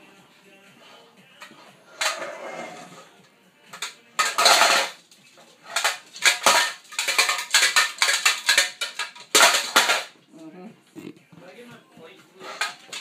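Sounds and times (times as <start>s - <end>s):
metal pots and pans clanging: 1.4s - 3.1s, 3.7s - 10.2s, 12.4s - 13.0s.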